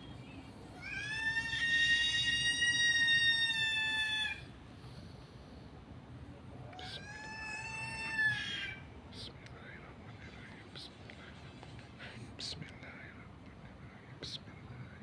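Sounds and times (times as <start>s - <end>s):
high-pitched animal-like call: 0.8s - 4.5s.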